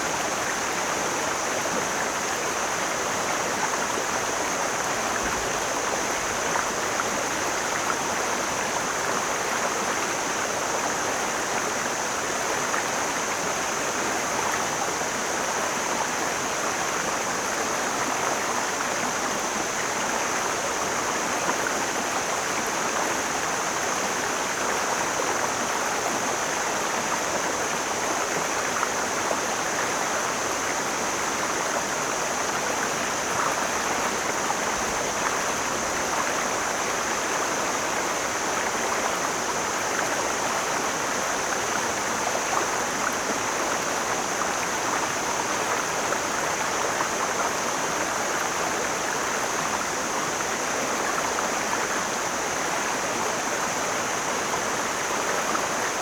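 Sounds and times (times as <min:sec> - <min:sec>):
stream splashing over rocks: 0:00.0 - 0:56.0.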